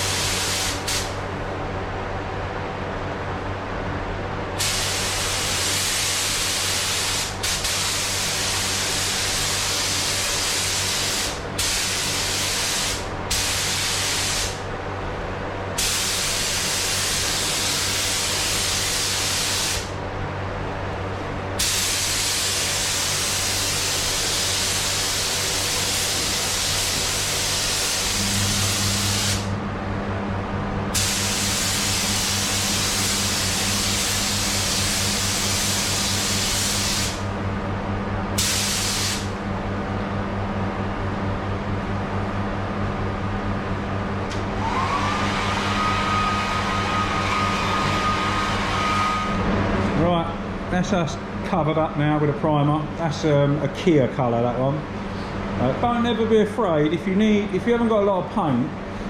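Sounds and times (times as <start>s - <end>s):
spray gun hissing: 0.0s - 1.1s, 4.6s - 14.6s, 15.8s - 19.9s, 21.6s - 29.5s, 30.9s - 37.2s, 38.4s - 39.3s
steady low hum: 0.0s - 59.0s.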